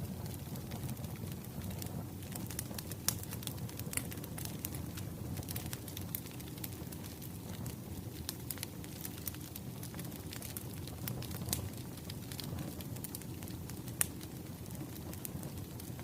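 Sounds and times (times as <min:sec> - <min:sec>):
wood fire crackling: 0:00.0 - 0:16.0.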